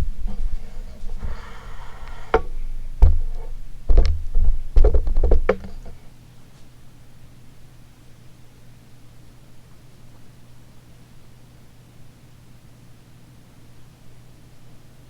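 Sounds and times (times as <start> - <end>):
heavy thuds: 0.0 - 6.1
faint low hum: 0.0 - 7.8
knocks and clicks: 0.3 - 6.0.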